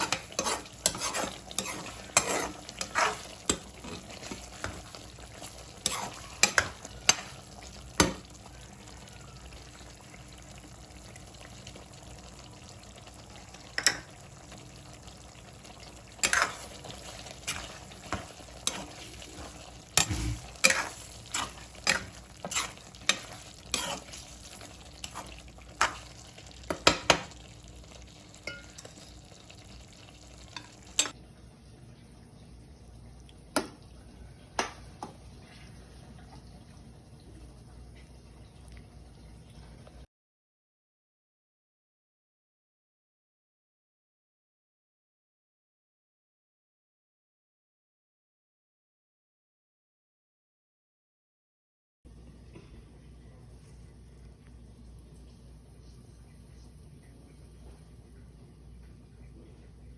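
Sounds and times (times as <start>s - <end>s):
spoon scraping and knocking pan: 0.0s - 8.3s, 16.1s - 27.5s, 28.4s - 29.3s
curry sizzling in a pan: 0.0s - 31.2s.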